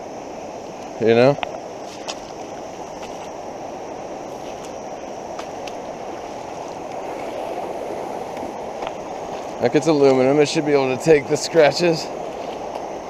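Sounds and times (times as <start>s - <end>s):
creek water rushing: 4.4s - 13.0s.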